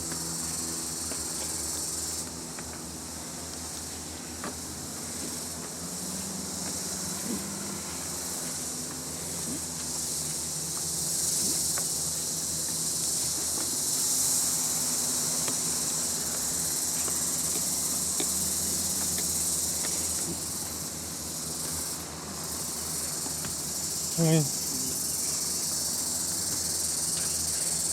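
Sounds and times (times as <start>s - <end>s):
insect chorus: 0.0s - 27.9s.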